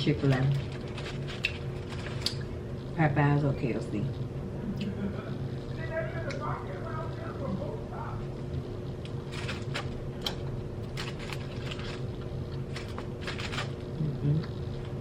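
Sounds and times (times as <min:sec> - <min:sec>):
chewing crunchy fried food: 0:00.3 - 0:02.5, 0:08.9 - 0:15.0.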